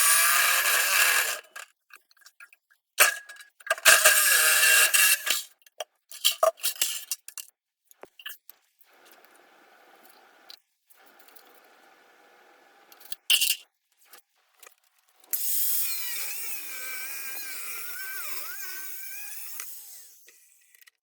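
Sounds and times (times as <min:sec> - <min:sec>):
power tool whining under load: 0:00.0 - 0:01.6, 0:03.9 - 0:05.4, 0:15.4 - 0:20.8.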